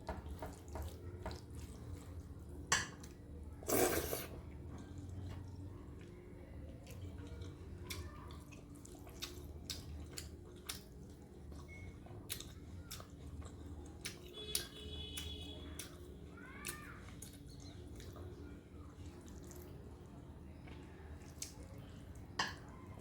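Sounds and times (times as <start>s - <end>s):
wet chewing and lip smacks: 6.8s - 16.1s.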